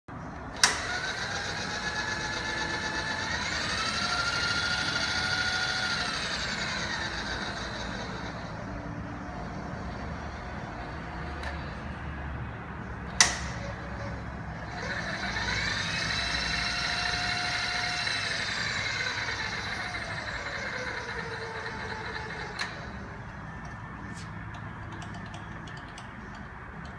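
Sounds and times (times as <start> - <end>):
milling machine spindle whine: 0.5 - 11.8, 13.1 - 24.2.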